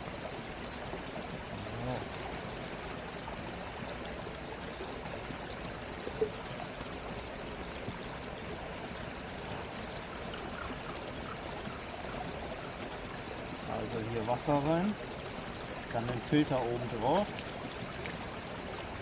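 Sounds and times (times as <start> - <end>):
creek water babbling: 0.0 - 19.0.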